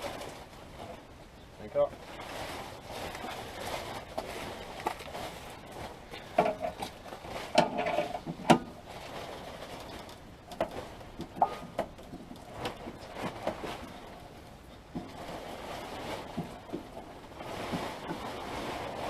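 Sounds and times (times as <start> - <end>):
metal clanks from tools and jack: 7.6 - 8.7.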